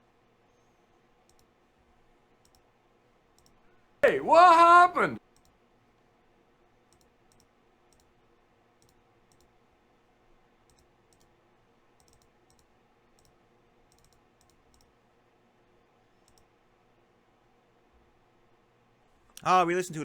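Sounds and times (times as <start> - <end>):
faint sharp clicks: 1.2 - 1.5, 2.4 - 2.7, 3.4 - 3.6, 5.4 - 5.6, 6.9 - 8.1, 8.8 - 9.6, 10.7 - 11.3, 12.0 - 14.9, 16.2 - 16.5.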